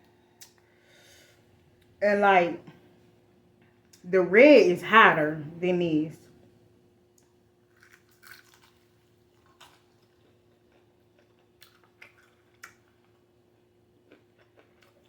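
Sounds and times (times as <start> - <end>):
faint chewing: 7.2 - 15.0.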